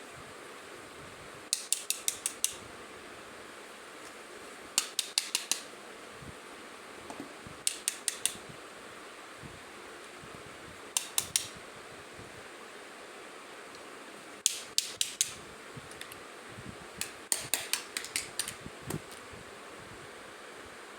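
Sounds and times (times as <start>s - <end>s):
plastic toy pieces clicking: 17.3s - 18.6s.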